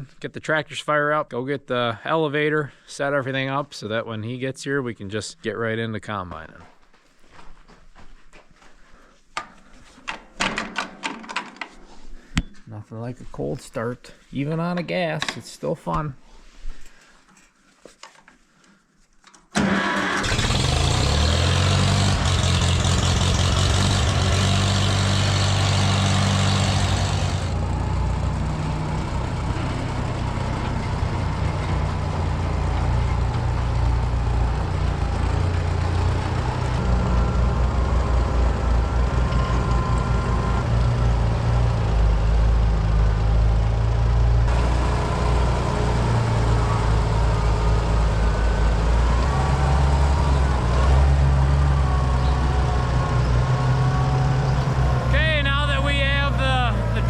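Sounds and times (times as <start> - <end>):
tractor engine starting and running: 19.3 - 57.0.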